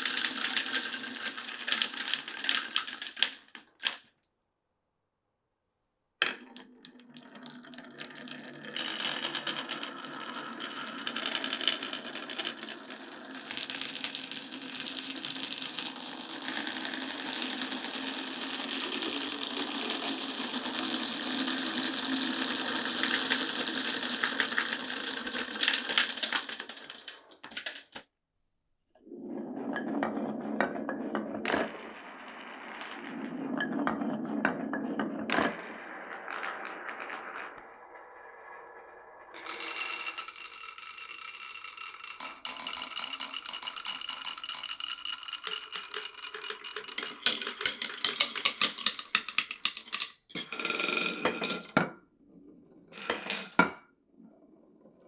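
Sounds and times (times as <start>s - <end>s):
marbles clattering down wooden run: 0.0s - 4.0s, 6.2s - 28.0s, 39.2s - 51.9s, 53.0s - 53.8s.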